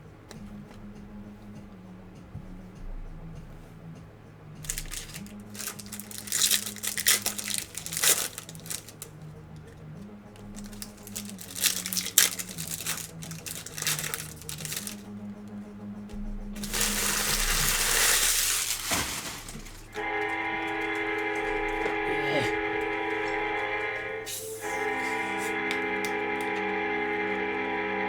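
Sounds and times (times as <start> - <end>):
foil wrappers crinkling and tearing: 4.6 - 9.1, 10.4 - 15.2, 16.6 - 22.0.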